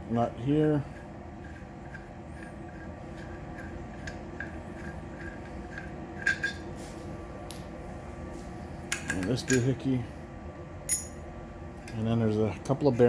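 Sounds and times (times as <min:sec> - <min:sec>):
sharp metal clinks: 0:10.9 - 0:11.2.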